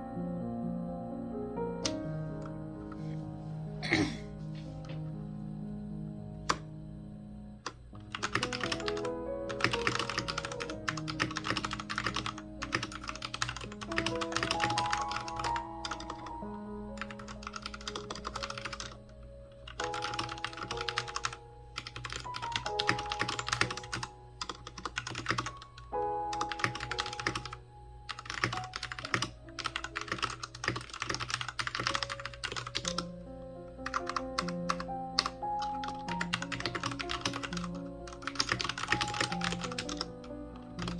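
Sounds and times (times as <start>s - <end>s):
mechanical keyboard typing: 7.6s - 16.4s, 17.0s - 19.0s, 19.6s - 33.1s, 33.8s - 40.9s.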